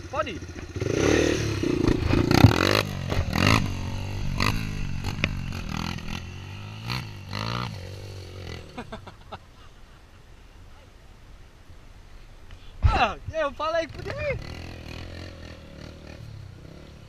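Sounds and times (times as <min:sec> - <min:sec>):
buggy engine revving: 0:00.0 - 0:09.0, 0:13.7 - 0:17.0.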